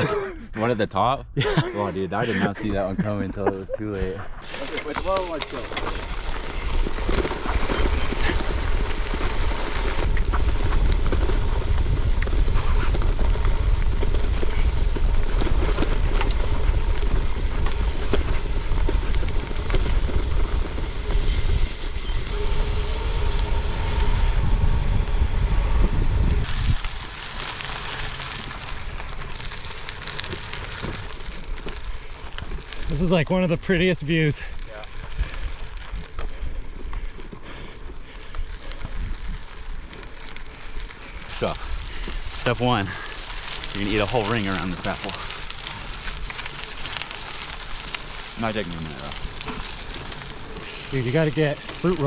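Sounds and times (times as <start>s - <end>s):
bike rattling over rough ground: 2.2s - 52.0s
wind buffeting microphone: 5.9s - 29.3s.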